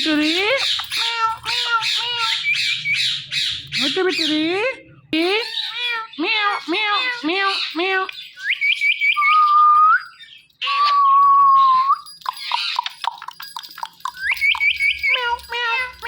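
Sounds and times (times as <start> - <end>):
parrot squawk: 0.6 - 4.3
parrot chirps and whistles: 8.3 - 13.2, 13.8 - 15.5.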